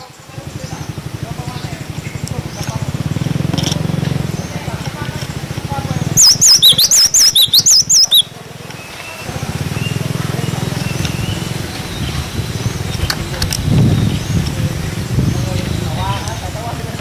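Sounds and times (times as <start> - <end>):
bird whistled song: 6.1 - 12.8
faint bird chirps: 6.2 - 10.0.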